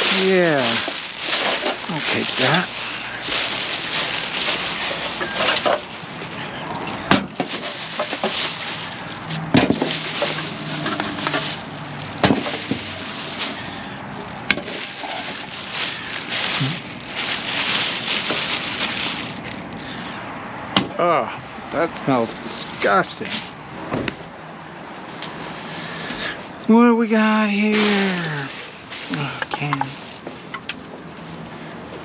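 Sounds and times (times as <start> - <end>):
plastic tarp crinkling: 0.0 - 19.8, 22.2 - 23.6, 27.6 - 30.5.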